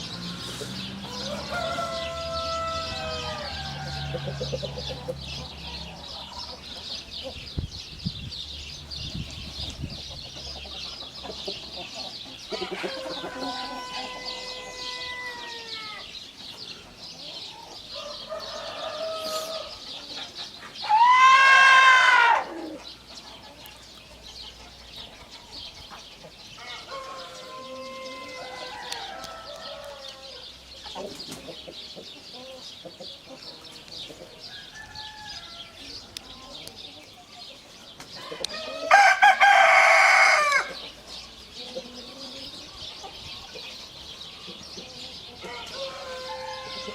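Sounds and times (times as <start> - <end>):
roosters crowing: 0.0 - 7.0, 11.3 - 16.3, 17.1 - 23.2, 26.5 - 32.7, 34.3 - 36.7, 38.1 - 43.8, 44.4 - 46.9.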